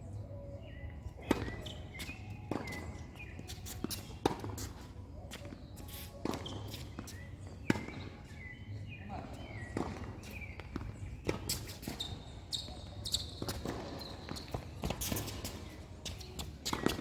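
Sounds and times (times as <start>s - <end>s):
tennis ball bouncing on court: 1.2s - 4.8s, 6.2s - 8.5s, 9.3s - 17.0s
tennis ball struck by racket: 16.7s - 17.0s.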